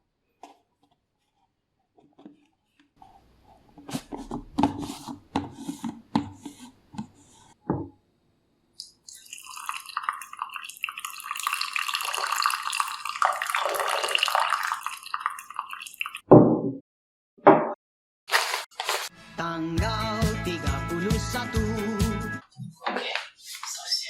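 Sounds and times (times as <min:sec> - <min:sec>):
water running from a tap: 0:09.1 - 0:16.2.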